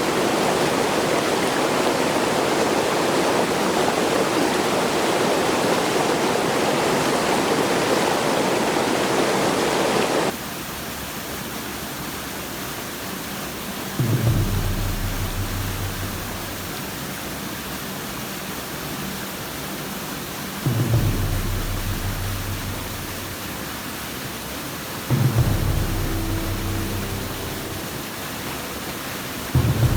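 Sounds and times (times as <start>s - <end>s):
rushing noise like running water: 0.0s - 29.9s
deep low hum: 14.0s - 16.9s, 20.7s - 23.6s, 25.1s - 28.0s.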